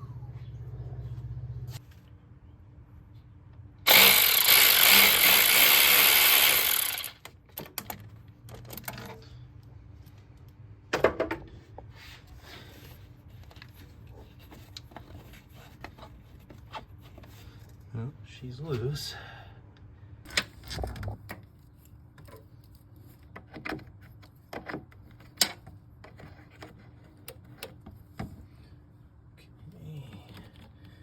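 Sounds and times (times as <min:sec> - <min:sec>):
power tool loosening a bolt: 0:03.9 - 0:07.3.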